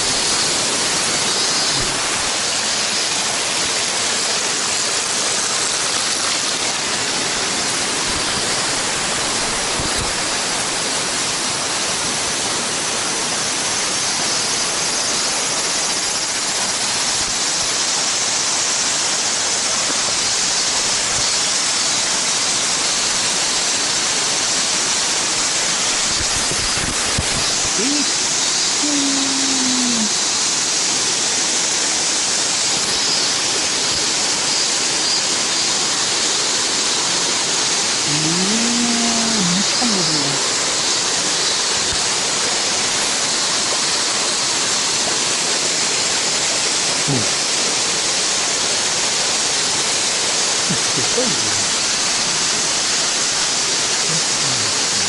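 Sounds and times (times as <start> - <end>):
waterfall pouring: 0.0 - 55.0.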